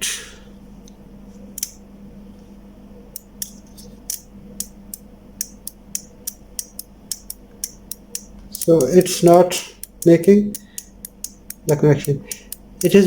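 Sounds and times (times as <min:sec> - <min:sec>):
relay clicking: 0:03.2 - 0:13.0.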